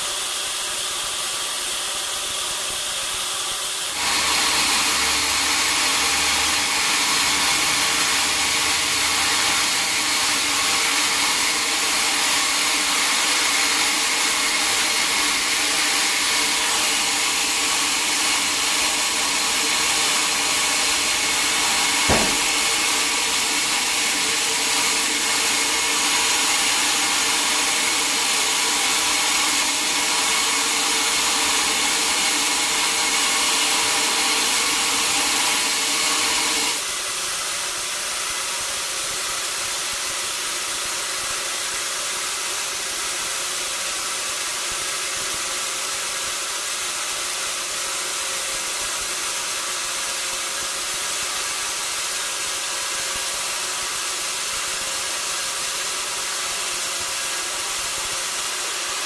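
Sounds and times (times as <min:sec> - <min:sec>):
sawmill saw running: 0:00.0 - 0:59.0
single knock: 0:22.1 - 0:22.6.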